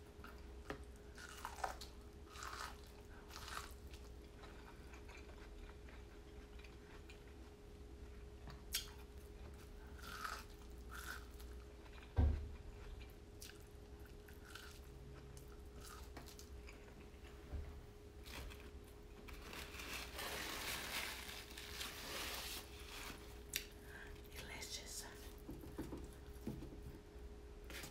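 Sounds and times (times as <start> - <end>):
faint steady hum: 0.0 - 27.9
person chewing food: 0.2 - 17.5.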